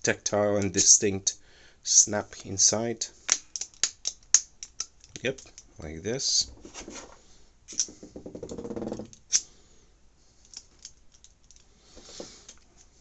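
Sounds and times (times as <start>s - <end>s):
screwdriver parts clicking: 3.4s - 5.7s, 10.4s - 11.7s.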